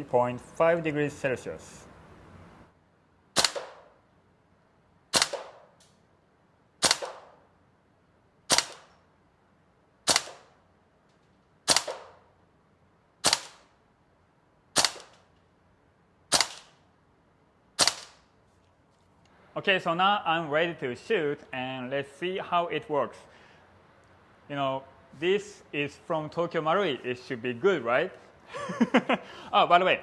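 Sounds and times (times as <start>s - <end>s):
airsoft rifle shots: 3.4s - 4.0s, 5.1s - 5.8s, 6.8s - 7.5s, 8.5s - 9.0s, 10.0s - 10.6s, 11.6s - 12.3s, 13.2s - 13.8s, 14.7s - 15.3s, 16.3s - 16.8s, 17.8s - 18.3s.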